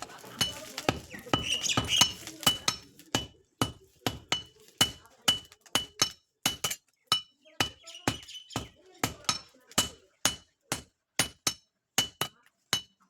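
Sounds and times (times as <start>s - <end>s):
hammer striking steel on anvil: 0.4s - 13.0s.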